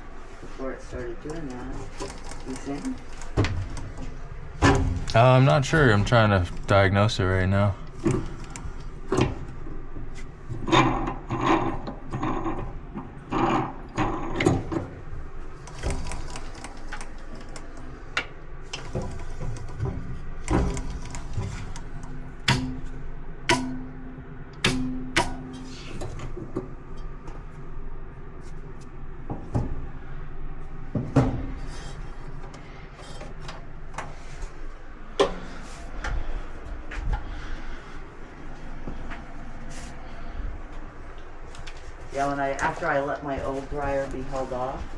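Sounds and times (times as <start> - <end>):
steady hum: 0.0 - 44.9
tools knocking and clanking on metal: 1.2 - 15.1, 15.7 - 27.4, 29.3 - 29.9, 30.8 - 37.4.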